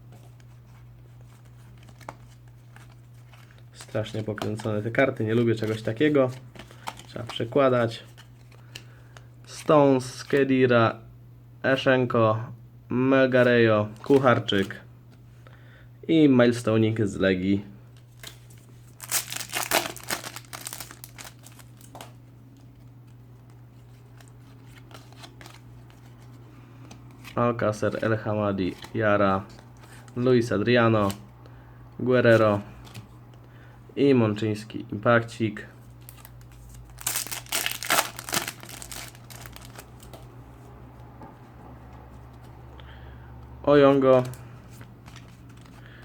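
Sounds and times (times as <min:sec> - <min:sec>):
handling of cards: 0:00.0 - 0:10.5, 0:13.3 - 0:15.2, 0:17.9 - 0:30.2, 0:32.3 - 0:33.4, 0:35.8 - 0:42.8, 0:43.8 - 0:46.0
low steady hum: 0:00.0 - 0:46.0
foil packet crinkling and tearing: 0:18.0 - 0:22.2, 0:36.0 - 0:40.2.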